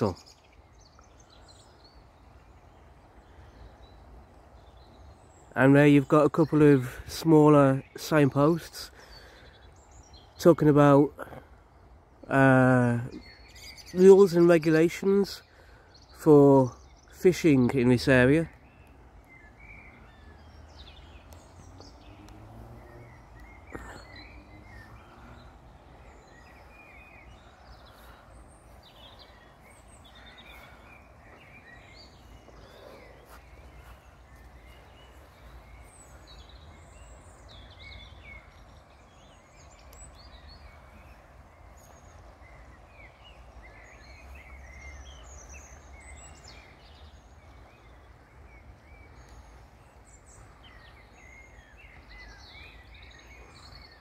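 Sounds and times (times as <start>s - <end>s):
small birds chirping and trilling: 0.0s - 54.0s.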